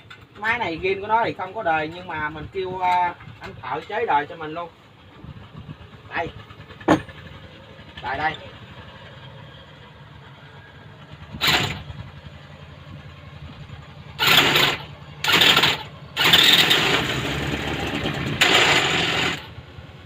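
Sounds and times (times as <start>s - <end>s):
electric starter cranking engine: 11.3s - 12.0s, 14.2s - 19.6s.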